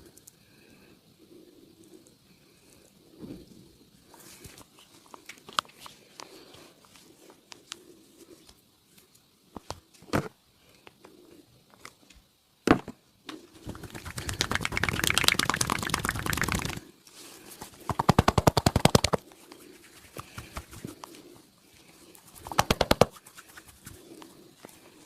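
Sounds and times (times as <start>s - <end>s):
hand slaps on body: 22.5s - 23.2s.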